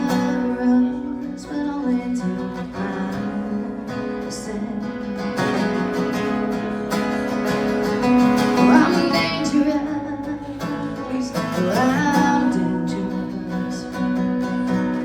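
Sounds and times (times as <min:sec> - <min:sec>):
woman singing: 0:00.0 - 0:05.1, 0:08.5 - 0:14.2
acoustic guitar strummed and plucked: 0:00.0 - 0:15.0.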